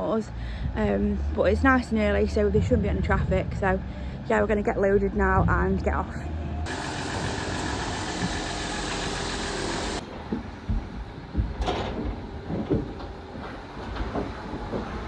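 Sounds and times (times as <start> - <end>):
knocks and clanks in trailer: 10.0 - 15.0.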